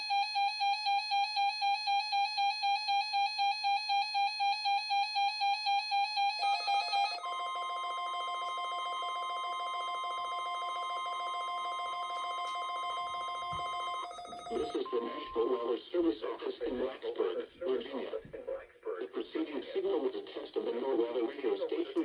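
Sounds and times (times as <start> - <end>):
rapid alarm beeping: 0.0 - 16.5
steady two-tone warning alarm: 0.0 - 16.8.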